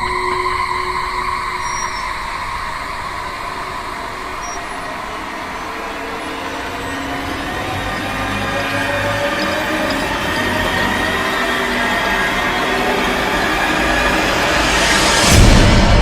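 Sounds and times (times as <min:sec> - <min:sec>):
noisy rumbling drone: 0:00.0 - 0:16.0.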